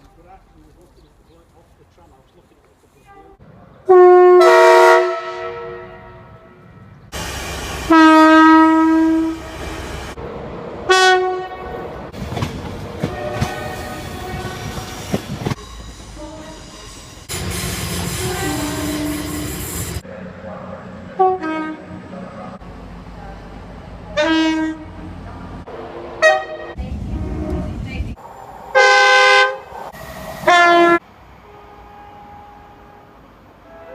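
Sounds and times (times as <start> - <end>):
train horn blasts: 3.1 - 6.8, 7.8 - 9.7, 10.9 - 11.9, 13.0 - 14.9, 18.0 - 20.0, 21.2 - 22.0, 24.2 - 25.1, 26.2 - 27.8, 30.4 - 33.9
train wheels clicking over rail joints: 12.1 - 18.1.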